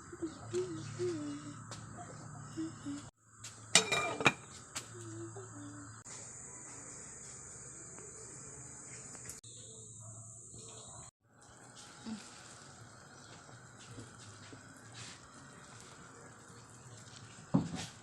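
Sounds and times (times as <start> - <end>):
insects chirring: 0.0 - 18.0
dishes and cutlery clattering: 3.8 - 4.5.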